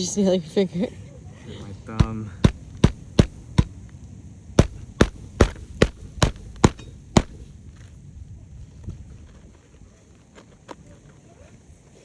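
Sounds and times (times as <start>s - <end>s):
hammer driving nails: 2.0s - 3.8s, 4.6s - 7.4s.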